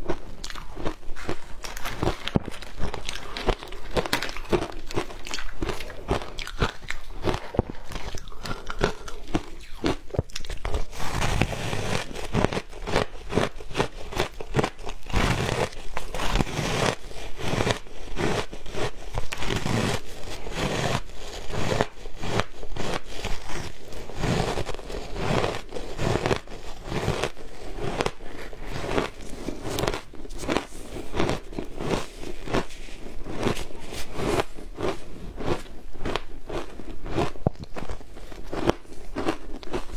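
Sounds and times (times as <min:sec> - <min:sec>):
chewing: 0:00.0 - 0:39.9
ice crunching: 0:00.5 - 0:17.2.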